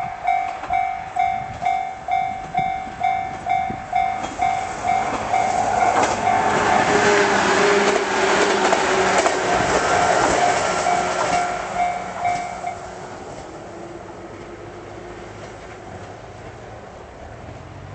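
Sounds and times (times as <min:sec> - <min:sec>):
crossing warning bell dinging: 0:00.0 - 0:13.1
rail-joint clicks: 0:00.0 - 0:13.5
train wheels rumbling on rails: 0:00.0 - 0:17.9.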